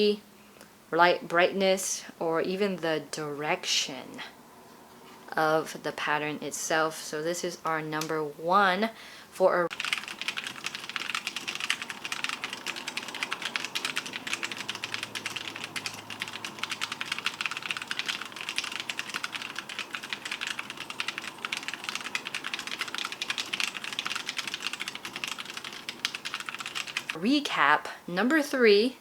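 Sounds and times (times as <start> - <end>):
mechanical keyboard typing: 9.7 - 27.2.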